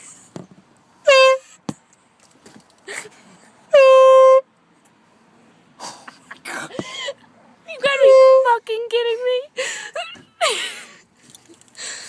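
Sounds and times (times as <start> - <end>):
shrill air horn blasts: 1.0 - 1.6, 3.7 - 4.5, 7.8 - 8.6.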